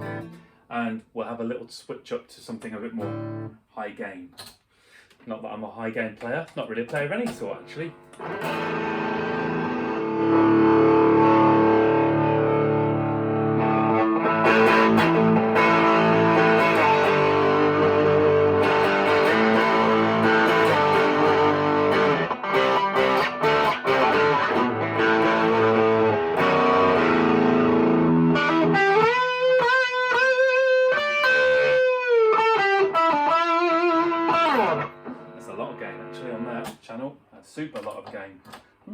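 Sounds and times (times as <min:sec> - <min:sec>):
distorted electric guitar: 0:00.0 - 0:00.4, 0:06.9 - 0:36.8.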